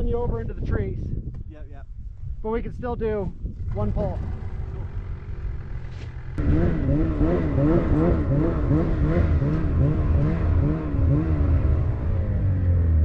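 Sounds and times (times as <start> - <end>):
snowmobile engine wavering pitch: 3.7 - 13.0.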